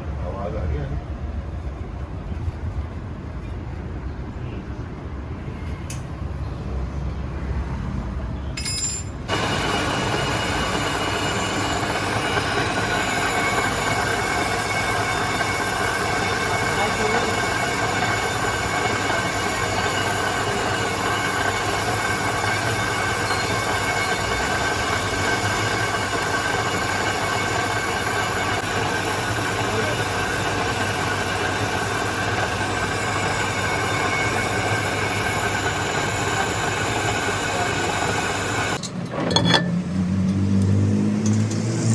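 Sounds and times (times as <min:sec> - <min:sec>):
machine rumble: 0:08.6 - 0:40.4.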